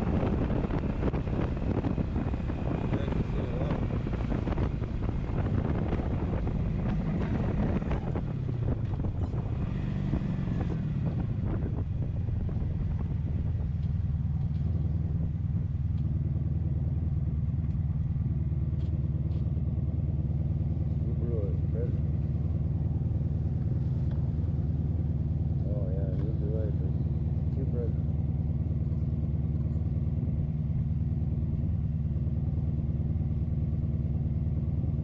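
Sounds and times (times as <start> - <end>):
wind buffeting microphone: 0.0 - 17.4
motorcycle engine running: 0.0 - 35.0.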